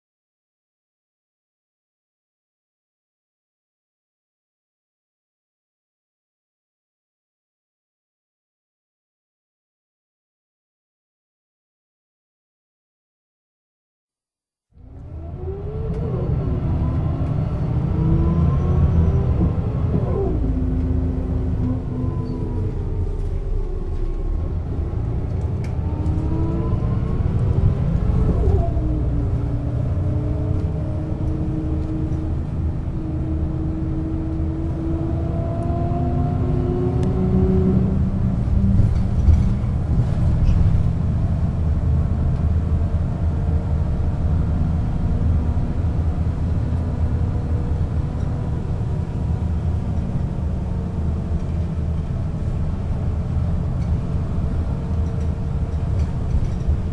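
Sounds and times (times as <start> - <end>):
bus drivetrain whine: 14.8 - 56.9
bus low rumble: 14.8 - 56.9.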